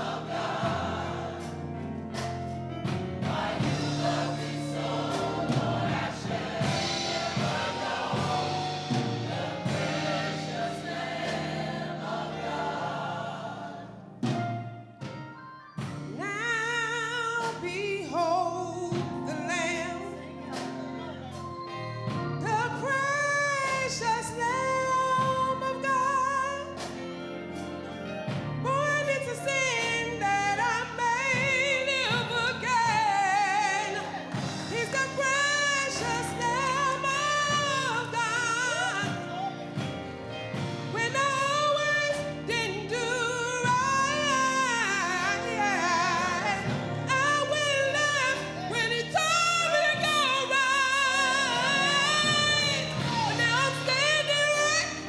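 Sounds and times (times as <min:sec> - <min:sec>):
sharp percussive hits: 0:00.0 - 0:12.3
sustained low instrumental chords: 0:00.0 - 0:14.4
person singing with vibrato: 0:40.9 - 0:55.0.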